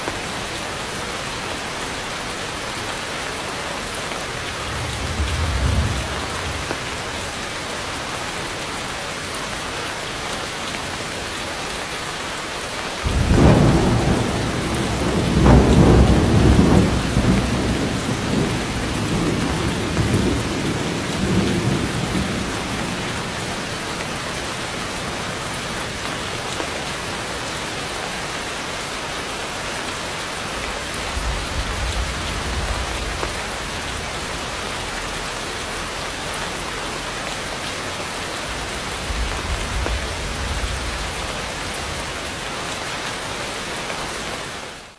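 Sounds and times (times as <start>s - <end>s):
heavy rain on foliage: 0.0s - 44.9s
thunder rumbling: 3.8s - 8.5s, 13.0s - 27.5s, 30.7s - 36.4s, 37.5s - 43.0s.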